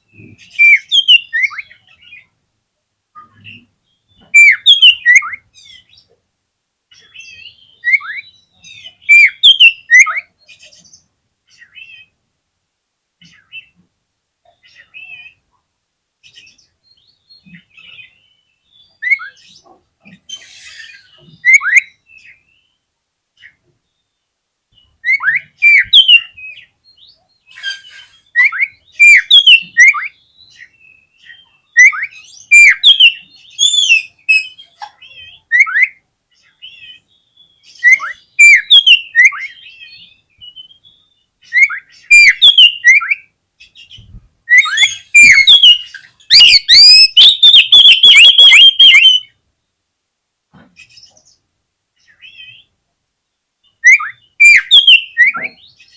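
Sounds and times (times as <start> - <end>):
bird singing whistled notes: 0.1 - 2.3, 3.2 - 6.1, 7.0 - 12.1, 16.3 - 19.6, 20.3 - 22.8, 23.9 - 49.4, 53.6 - 55.9.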